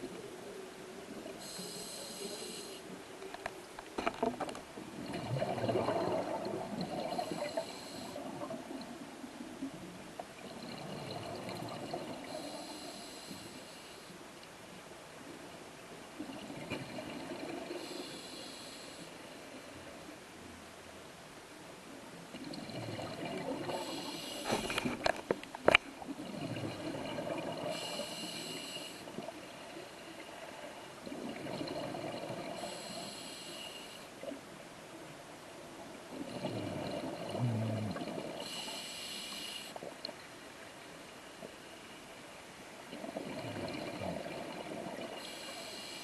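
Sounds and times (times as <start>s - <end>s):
faint underwater hiss: 0.0s - 46.0s
regulator breathing hiss: 1.4s - 2.9s, 7.2s - 8.2s, 12.3s - 14.2s, 17.8s - 19.1s, 23.8s - 24.8s, 27.7s - 29.1s, 32.6s - 34.1s, 38.4s - 39.8s, 45.2s - 46.0s.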